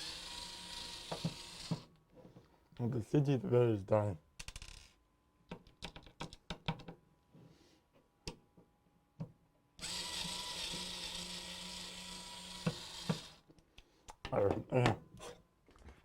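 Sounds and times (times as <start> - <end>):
small power tool motor whirring: 0.0 - 1.9, 9.8 - 13.4
computer parts clicking and knocking: 5.5 - 7.0.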